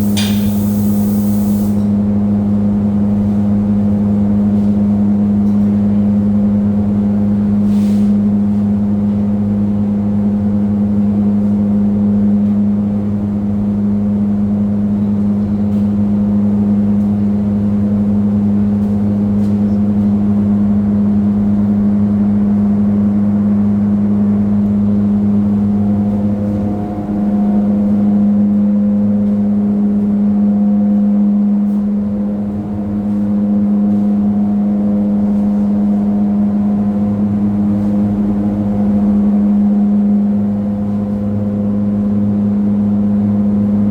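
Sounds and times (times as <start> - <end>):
spray equipment motor hum: 0.0 - 1.9.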